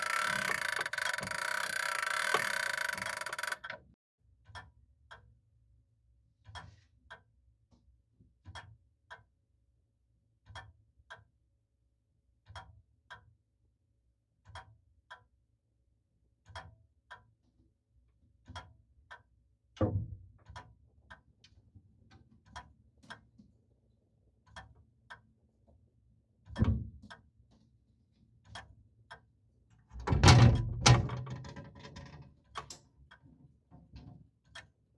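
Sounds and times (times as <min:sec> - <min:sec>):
grandfather clock ticking: 0:00.0 - 0:03.8.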